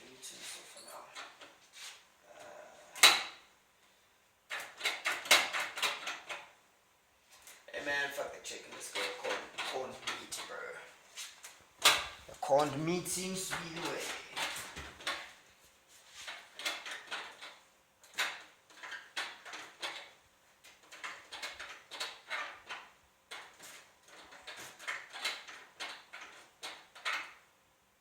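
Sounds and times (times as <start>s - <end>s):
kitchen items clattering: 11.9s - 15.4s.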